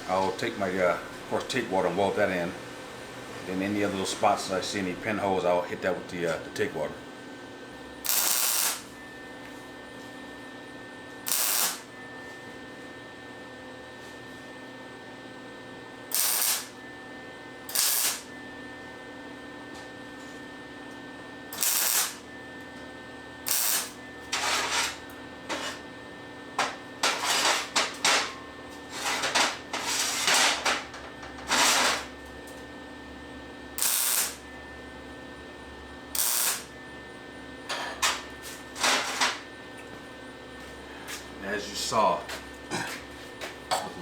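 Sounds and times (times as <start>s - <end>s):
grinder running hum: 7.7s - 10.0s, 10.7s - 12.6s, 16.1s - 17.0s, 17.6s - 18.8s, 21.4s - 22.8s, 23.4s - 28.1s, 33.7s - 37.0s
grinder bursts on metal: 8.0s - 8.9s, 11.3s - 11.9s, 16.1s - 16.8s, 17.7s - 18.3s, 21.6s - 22.2s, 23.5s - 25.7s, 31.5s - 32.1s, 33.8s - 34.4s, 36.2s - 36.7s.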